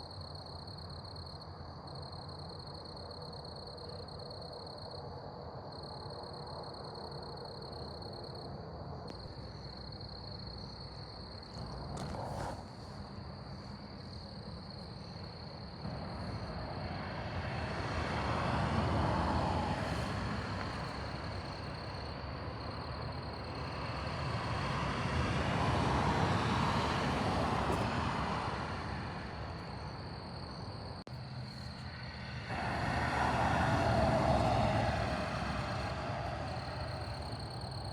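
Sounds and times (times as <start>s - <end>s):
insects chirring: 5.7s - 37.9s
vehicles driving past: 10.2s - 37.9s.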